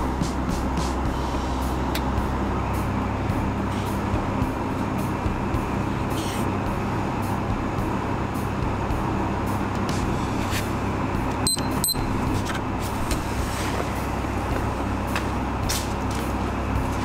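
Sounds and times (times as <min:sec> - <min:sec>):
dryer fan and motor humming: 0:00.0 - 0:17.0.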